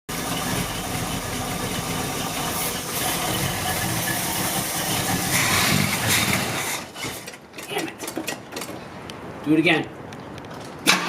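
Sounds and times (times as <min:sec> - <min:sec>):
car engine cranking by starter: 0:00.1 - 0:08.8.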